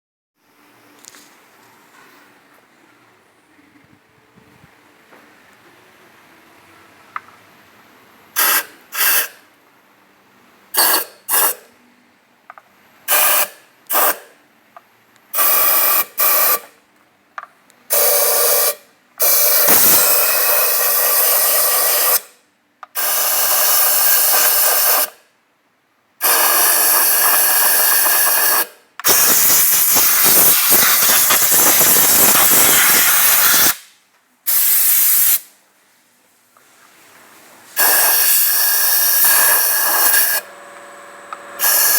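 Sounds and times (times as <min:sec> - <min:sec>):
hissing spray blasts: 0:26.2 - 0:33.9, 0:37.8 - 0:40.4.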